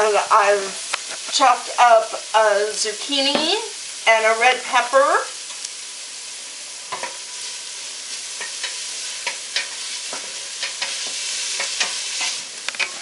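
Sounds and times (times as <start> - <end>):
onion and garlic sizzling: 0.0 - 13.0
utensil scraping a pot: 8.4 - 13.0.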